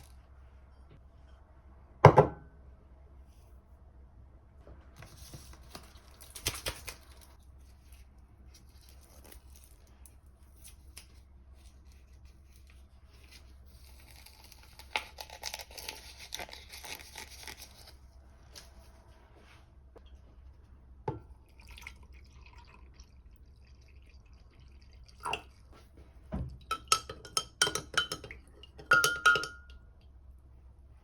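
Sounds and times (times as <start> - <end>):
tearing and crinkling: 5.1 - 18.7.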